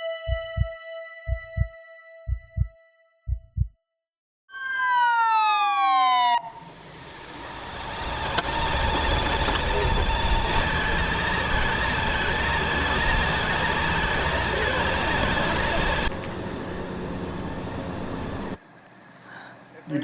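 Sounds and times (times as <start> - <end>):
emergency vehicle siren: 4.5 - 18.6
steady noisy rumble: 7.6 - 19.8.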